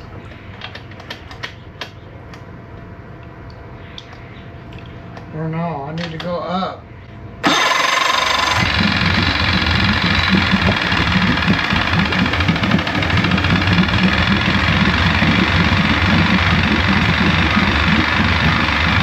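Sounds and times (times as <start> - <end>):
outboard engine running: 7.4 - 19.0.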